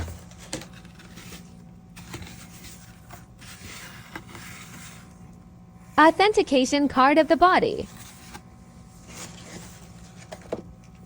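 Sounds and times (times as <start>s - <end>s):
packaging rustling and scraping: 0.0s - 5.2s, 7.8s - 11.0s.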